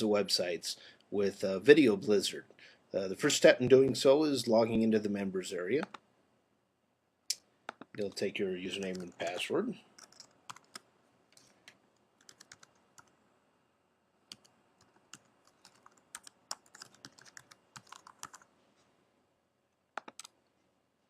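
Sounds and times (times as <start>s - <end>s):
faint keyboard typing: 5.7s - 6.0s, 7.6s - 13.2s, 14.2s - 18.5s, 19.9s - 20.5s.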